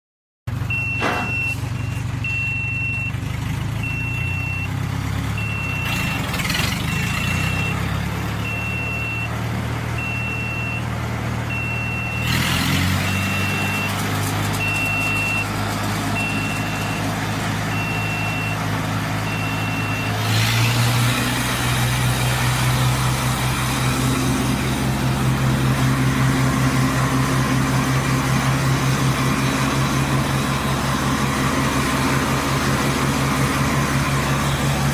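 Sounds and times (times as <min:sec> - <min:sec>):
wood chipper engine running: 0:00.5 - 0:34.9
short electronic beeps: 0:00.7 - 0:03.2, 0:03.8 - 0:04.8, 0:05.4 - 0:06.3, 0:07.3 - 0:09.4, 0:10.0 - 0:10.9, 0:11.5 - 0:15.6, 0:16.2 - 0:20.5.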